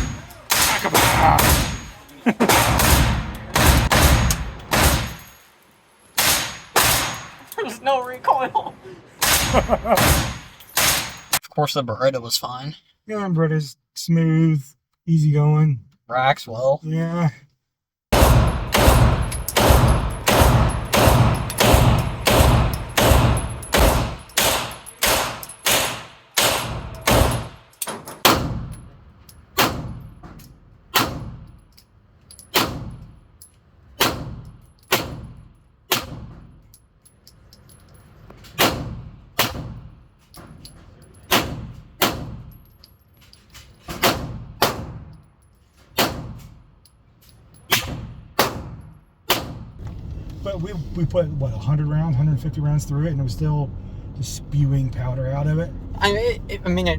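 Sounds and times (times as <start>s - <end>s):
gunshots with echoing tail: 0.0s - 5.2s, 6.2s - 7.3s, 9.2s - 11.2s, 18.1s - 27.6s.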